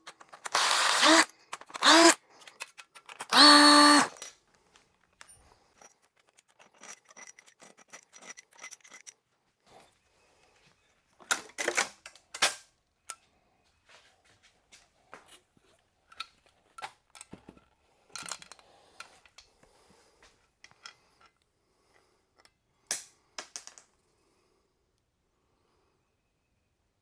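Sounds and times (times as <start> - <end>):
metal tools clinking: 0.0 - 4.4, 5.2 - 9.2.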